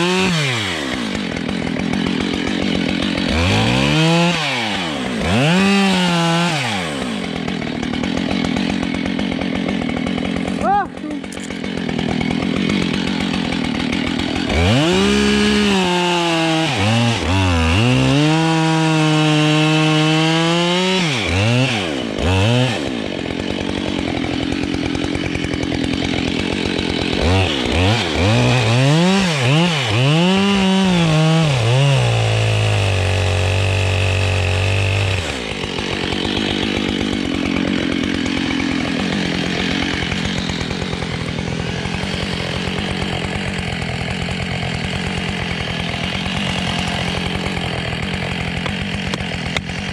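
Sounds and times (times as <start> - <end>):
chainsaw revving and cutting: 0.0 - 49.9.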